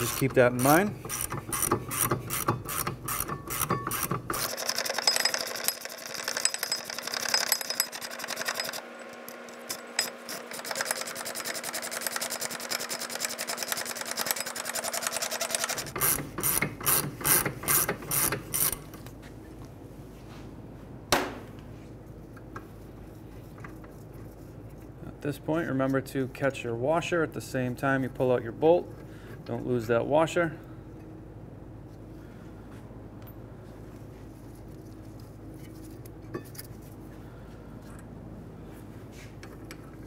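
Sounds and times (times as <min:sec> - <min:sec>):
ratchet pawl clicking: 0:00.0 - 0:08.8, 0:09.7 - 0:18.8.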